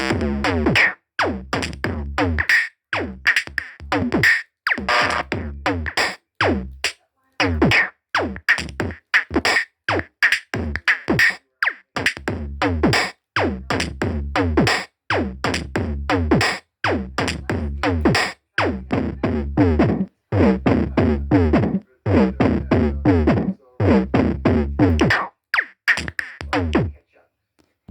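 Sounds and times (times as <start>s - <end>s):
stuttering electronic music: 1.6s - 6.0s, 9.3s - 26.9s.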